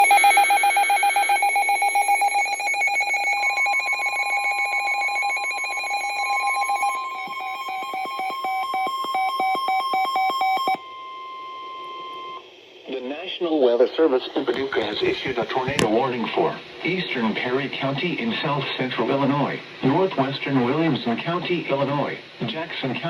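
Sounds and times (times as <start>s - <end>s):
rapid electronic alert beeping: 0.0s - 12.4s
steady warning alarm tone: 0.0s - 12.5s.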